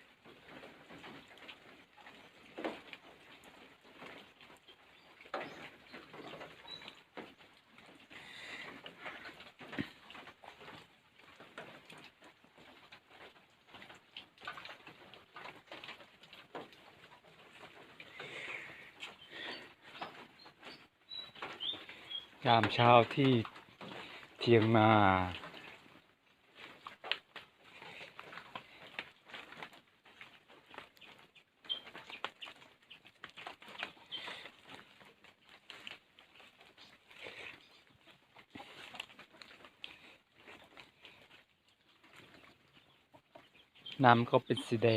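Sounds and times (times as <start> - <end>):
rain pattering and dripping: 0.0 - 44.9
bird chirps: 4.7 - 7.0, 18.1 - 22.6, 30.7 - 34.5, 41.6 - 44.9.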